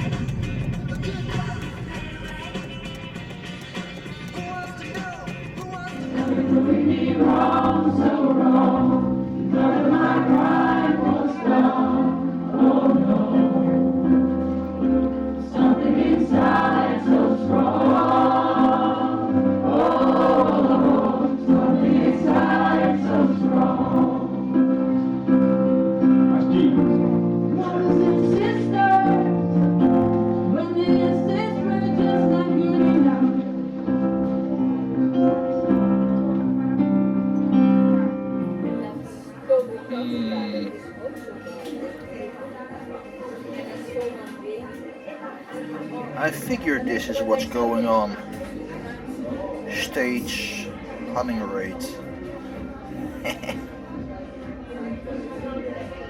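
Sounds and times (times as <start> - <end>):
instrumental backing music: 0.0 - 43.4, 46.3 - 56.0
choir singing: 4.4 - 33.8.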